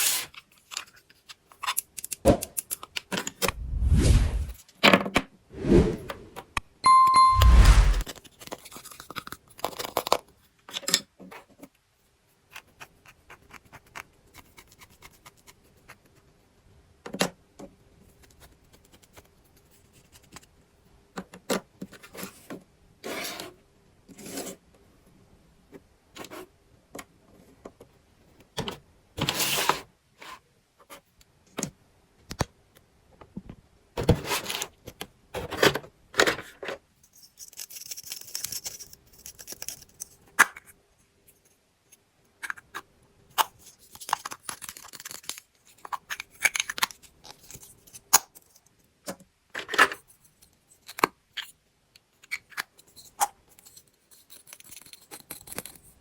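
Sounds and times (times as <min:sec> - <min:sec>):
plastic toys clicking and scraping: 0:00.1 - 0:03.5, 0:34.2 - 0:40.8, 0:41.4 - 0:56.0.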